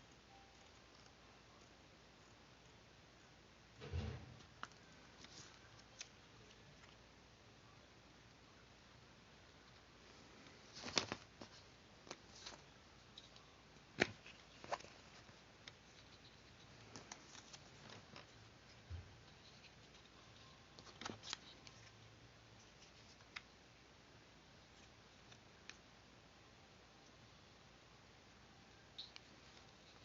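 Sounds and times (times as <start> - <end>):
paper clicks and rustles: 10.4 - 13.4, 14.0 - 22.0.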